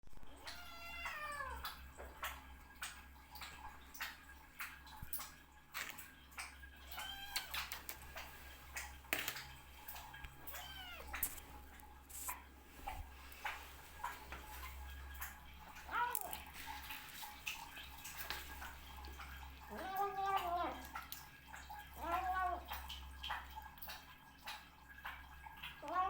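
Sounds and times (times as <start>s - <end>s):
cat meowing: 0.4s - 1.7s, 6.9s - 7.7s, 10.4s - 11.4s, 15.9s - 16.4s, 19.7s - 20.8s, 22.0s - 22.8s.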